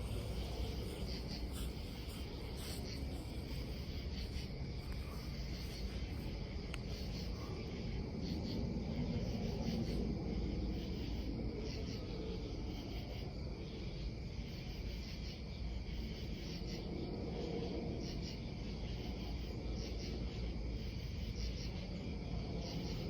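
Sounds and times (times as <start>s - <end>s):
steady low rumble: 0.0s - 11.6s
crickets chirping: 0.0s - 23.0s.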